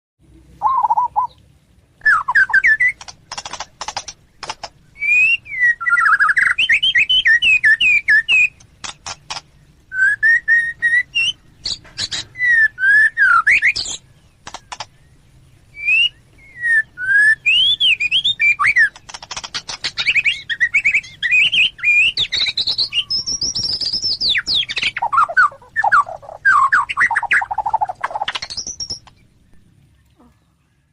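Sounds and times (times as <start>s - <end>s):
songbird singing whistled notes: 0.6s - 1.4s, 2.0s - 4.1s, 4.8s - 9.2s, 9.9s - 29.6s
bird clicking notes: 2.1s - 5.2s, 7.4s - 9.6s, 13.5s - 15.0s, 18.0s - 22.8s.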